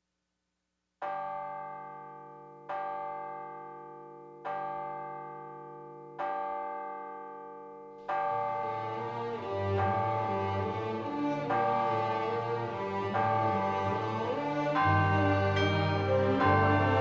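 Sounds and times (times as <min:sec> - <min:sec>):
bell tolling: 0:08.1 - 0:17.0.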